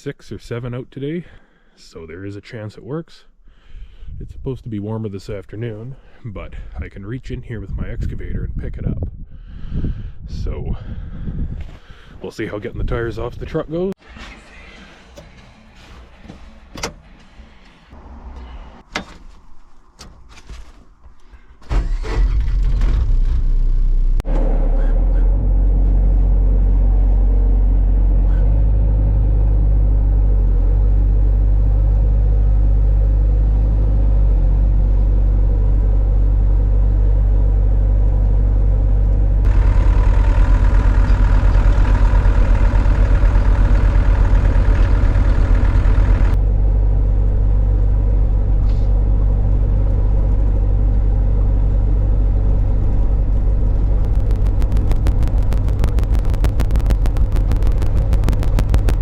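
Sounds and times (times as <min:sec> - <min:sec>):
excavator diesel engine running: 0:37.8 - 0:59.0.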